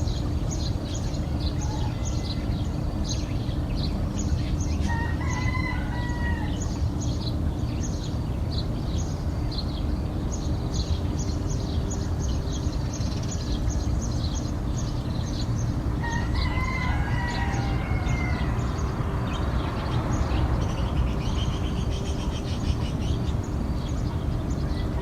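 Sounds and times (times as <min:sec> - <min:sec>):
small birds chirping: 0:00.0 - 0:25.0
rooster crowing: 0:01.2 - 0:03.0, 0:04.7 - 0:06.8, 0:16.0 - 0:19.9.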